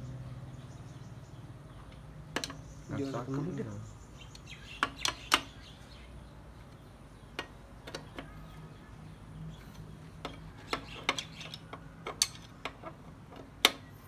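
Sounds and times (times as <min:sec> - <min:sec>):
hard objects clicking and tapping: 0:02.3 - 0:02.7, 0:04.3 - 0:05.6, 0:07.3 - 0:08.4, 0:09.7 - 0:14.0.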